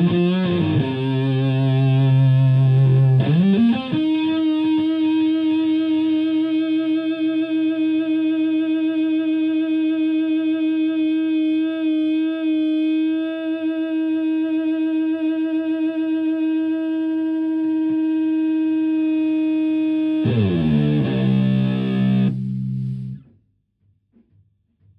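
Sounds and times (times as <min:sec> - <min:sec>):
sustained fuzz electric guitar note: 0:00.0 - 0:07.0, 0:17.6 - 0:23.2.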